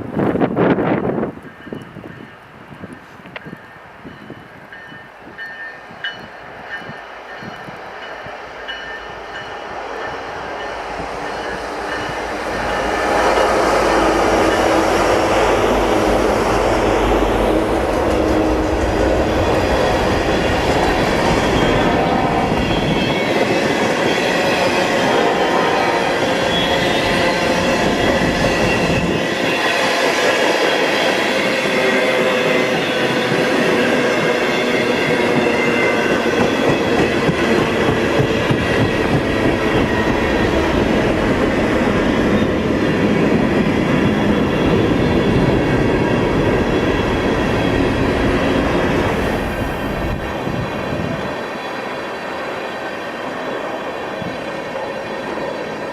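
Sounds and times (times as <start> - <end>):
freight train wheels clattering: 26.1 - 50.4.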